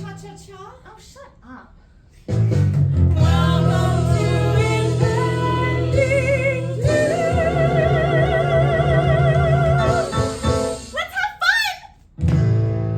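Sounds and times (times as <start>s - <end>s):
instrumental accompaniment: 2.3s - 11.0s
person singing show tune: 2.3s - 11.9s.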